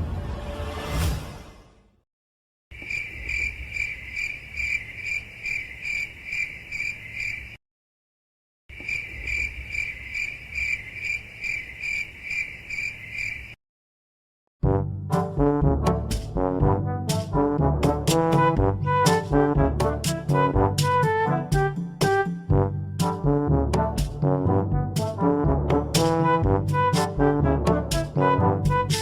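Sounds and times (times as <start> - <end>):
crickets chirping: 2.8 - 7.6, 8.7 - 13.6.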